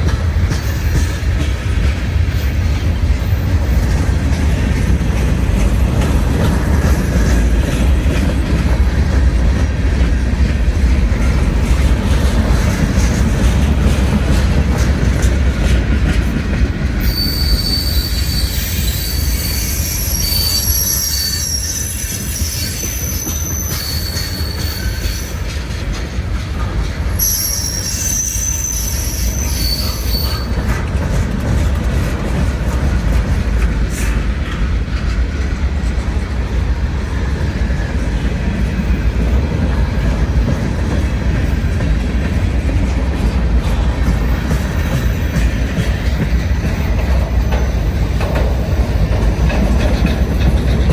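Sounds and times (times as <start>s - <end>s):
freight train rumbling past: 0.0s - 50.9s
high-pitched wheel squeals: 17.0s - 25.5s, 27.2s - 30.7s.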